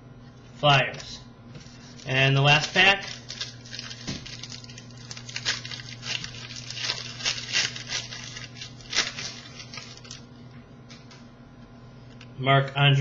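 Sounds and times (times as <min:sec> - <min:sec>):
wrapper tearing and crinkling: 0:01.6 - 0:10.3.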